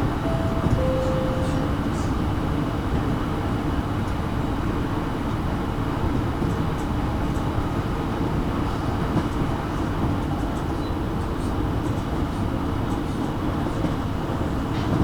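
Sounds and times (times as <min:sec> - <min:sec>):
train wheels rumbling on rail: 0:04.0 - 0:15.0.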